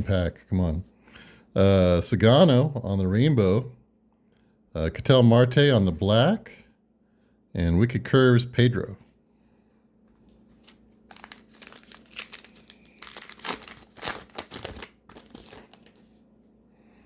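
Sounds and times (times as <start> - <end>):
wrapper crinkling and tearing: 10.6 - 16.2.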